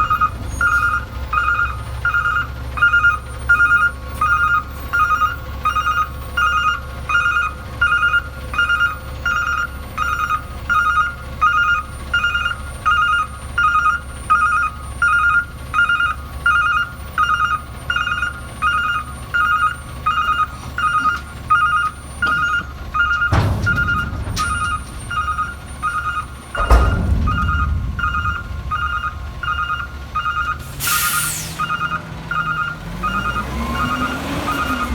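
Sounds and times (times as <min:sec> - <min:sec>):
sudden thumps: 0:23.2 - 0:32.6
low rumble: 0:23.3 - 0:32.5.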